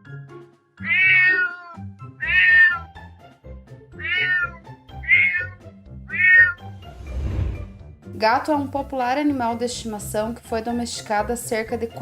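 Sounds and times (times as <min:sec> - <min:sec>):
background music: 0:00.0 - 0:12.0
cat meowing: 0:00.8 - 0:02.9, 0:04.0 - 0:06.6.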